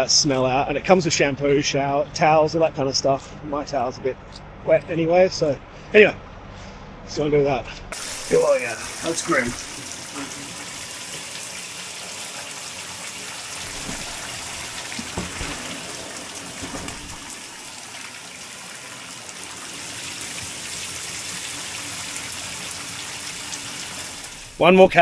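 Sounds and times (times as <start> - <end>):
shower running: 7.9 - 25.0.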